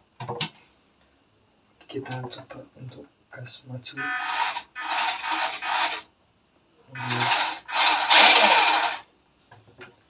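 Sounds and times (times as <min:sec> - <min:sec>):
electric motor and gears whirring: 0:04.0 - 0:06.1, 0:07.0 - 0:09.1.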